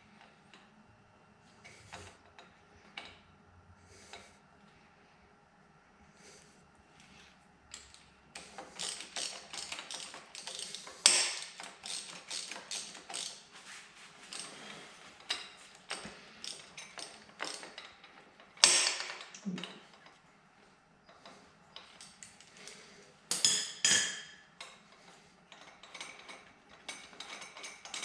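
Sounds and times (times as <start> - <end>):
socket ratchet clicking: 7.8 - 13.4.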